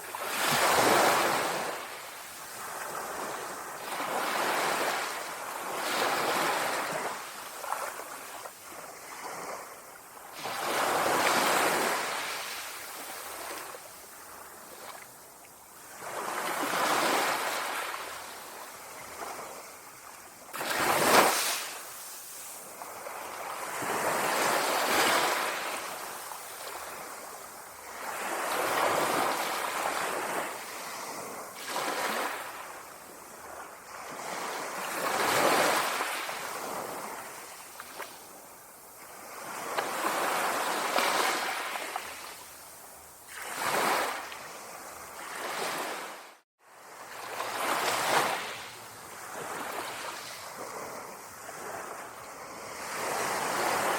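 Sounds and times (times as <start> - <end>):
small waves lapping on shore: 0.0 - 53.9
sharp wave splash: 20.5 - 22.4.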